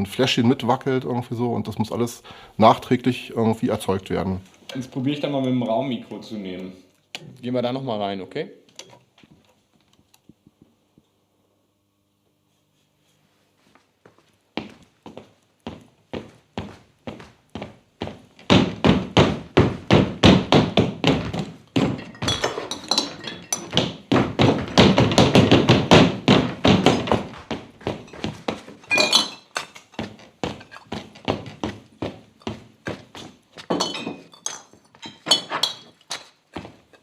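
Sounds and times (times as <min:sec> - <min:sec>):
footsteps on wooden stairs: 0:13.6 - 0:34.3, 0:36.2 - 0:37.0
glass bottles clinking: 0:21.8 - 0:25.0, 0:28.0 - 0:30.0, 0:33.6 - 0:36.1.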